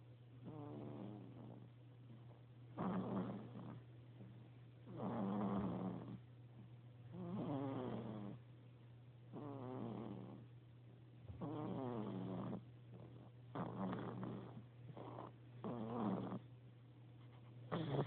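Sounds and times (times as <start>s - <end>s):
low steady hum: 0.0s - 18.0s
snoring: 0.4s - 1.7s, 2.8s - 3.8s, 4.9s - 6.2s, 7.1s - 8.4s, 9.3s - 10.4s, 11.4s - 16.5s, 17.7s - 18.0s.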